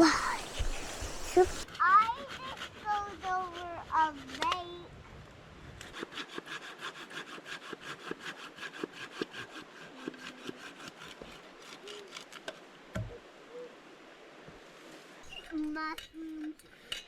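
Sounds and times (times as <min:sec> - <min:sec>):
hand saw cutting wood: 0:00.0 - 0:04.5, 0:05.8 - 0:11.8.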